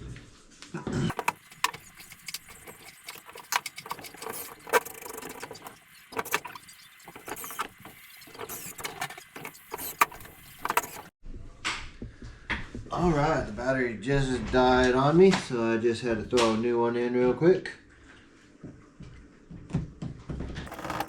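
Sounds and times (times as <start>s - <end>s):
parts clicking and knocking: 1.1s - 11.1s, 20.7s - 21.0s.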